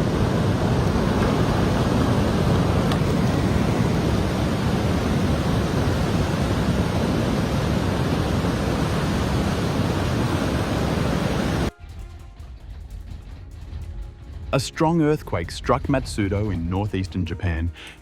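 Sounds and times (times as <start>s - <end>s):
floodwater rushing: 0.0s - 11.7s
heavy rain: 0.0s - 11.7s.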